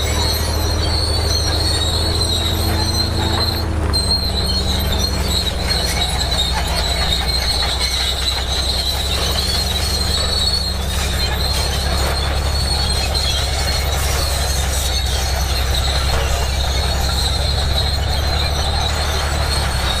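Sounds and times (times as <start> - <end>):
bulldozer diesel engine drone: 0.0 - 20.0
metallic squeal of crawler tracks: 0.0 - 20.0.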